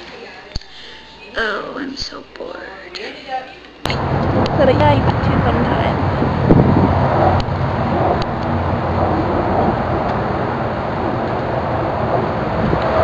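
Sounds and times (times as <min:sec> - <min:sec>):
vehicle running rumble and hiss: 0:03.9 - 0:13.0.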